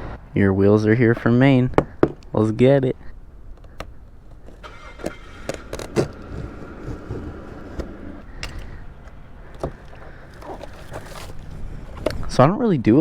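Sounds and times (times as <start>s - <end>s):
low steady rumble: 3.1s - 12.4s.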